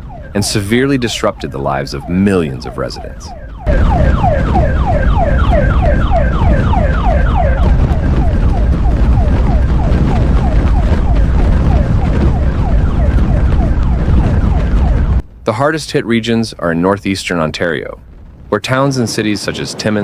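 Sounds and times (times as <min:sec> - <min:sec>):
siren yelping: 0:00.0 - 0:15.2
loud low rumble: 0:00.0 - 0:20.0.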